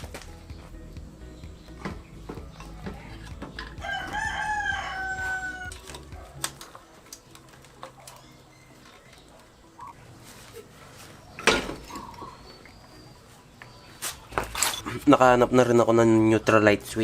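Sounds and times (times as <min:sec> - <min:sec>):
rooster crowing: 0:03.8 - 0:05.9.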